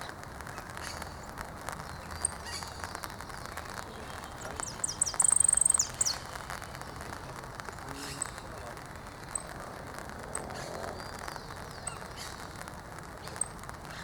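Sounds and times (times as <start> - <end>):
finch singing: 2.0 - 6.4.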